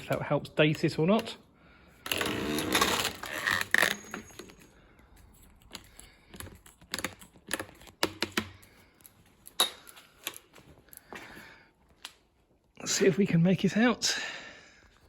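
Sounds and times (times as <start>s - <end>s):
camera handling clicks and knocks: 5.6s - 8.7s.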